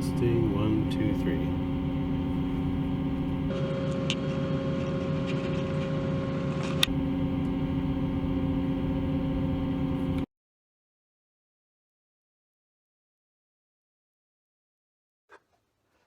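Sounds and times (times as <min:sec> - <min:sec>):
ferry engine drone: 0:00.0 - 0:10.3.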